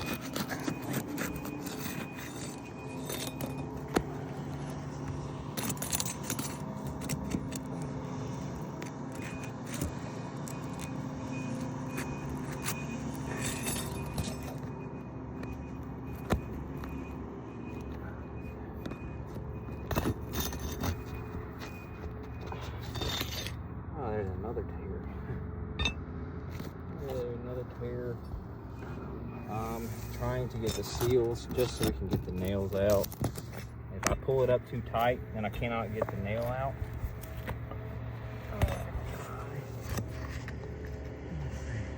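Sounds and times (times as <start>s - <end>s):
pry bar scraping roof shingles: 0.0s - 14.7s.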